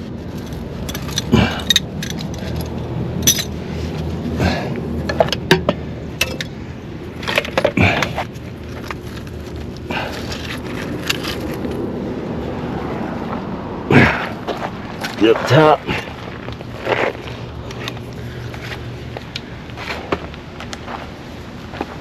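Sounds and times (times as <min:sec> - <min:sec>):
metal hand tools clinking: 0:00.3 - 0:03.6, 0:06.2 - 0:06.5.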